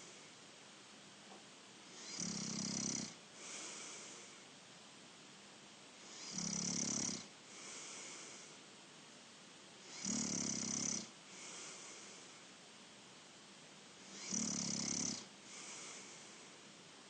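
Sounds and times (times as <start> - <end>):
person snoring: 2.0 - 4.3, 6.1 - 8.5, 9.9 - 11.9, 14.1 - 16.5
soft breath: 3.3 - 4.5, 7.4 - 8.7, 11.2 - 12.6, 15.4 - 16.8.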